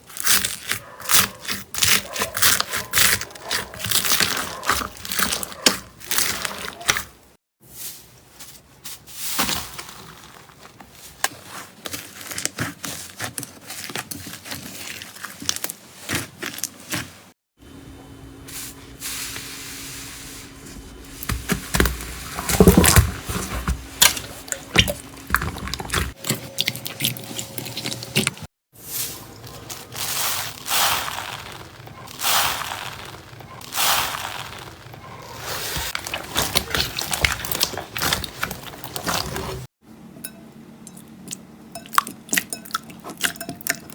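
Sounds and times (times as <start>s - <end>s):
slime squishing: 0.0s - 7.1s, 20.9s - 28.5s, 29.3s - 39.7s
slime crackling and popping: 0.1s - 6.6s.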